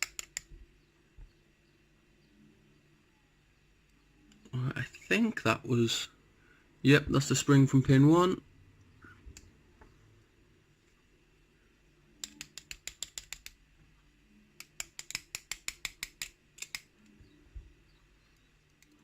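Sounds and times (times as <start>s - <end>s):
light clicks of padlock: 14.6s - 17.2s.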